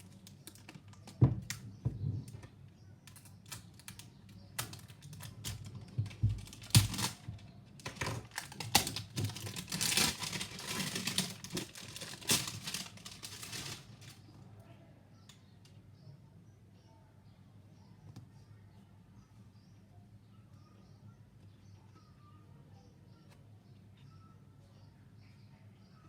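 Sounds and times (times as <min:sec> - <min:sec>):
crinkly packaging rustling: 0:03.2 - 0:14.2.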